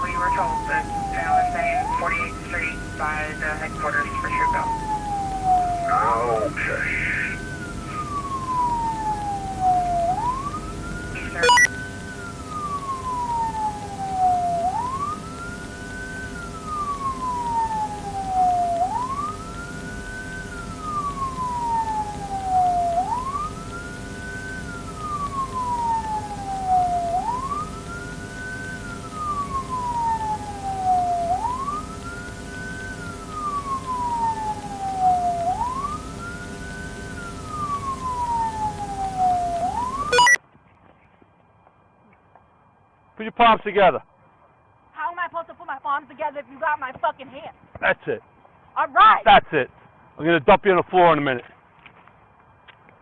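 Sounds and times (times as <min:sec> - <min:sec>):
police siren wailing: 0:00.0 - 0:06.6, 0:07.8 - 0:11.7, 0:12.5 - 0:19.4, 0:33.2 - 0:36.4, 0:37.2 - 0:40.4
steady low hum: 0:00.0 - 0:40.4.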